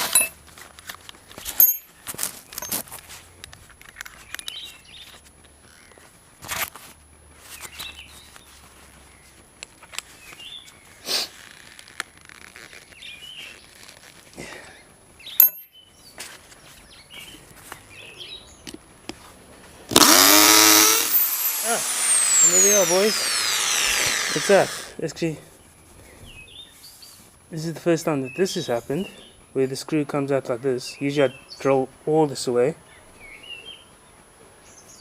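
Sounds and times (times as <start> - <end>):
small birds chirping: 10.0 - 11.0, 14.6 - 18.8, 25.5 - 27.3.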